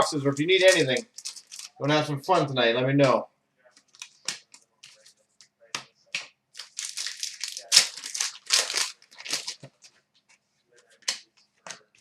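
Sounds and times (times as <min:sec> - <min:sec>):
wrapper crinkling and rustling: 0:00.4 - 0:01.8, 0:03.8 - 0:05.2, 0:06.6 - 0:10.4.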